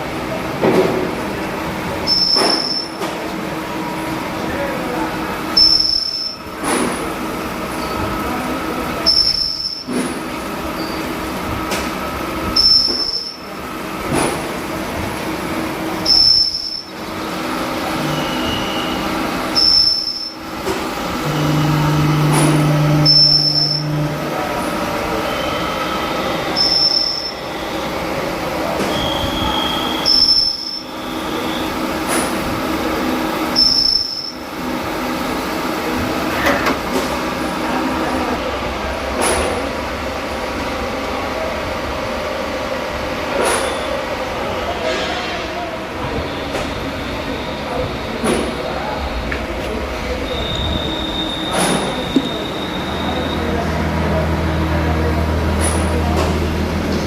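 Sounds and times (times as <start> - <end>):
short high machine whine: 5.6 - 6.6, 16.0 - 31.9, 33.5 - 34.5, 50.0 - 57.0
machine grinding metal with squeal: 9.0 - 11.2, 16.0 - 32.2, 33.5 - 34.5, 50.0 - 57.0.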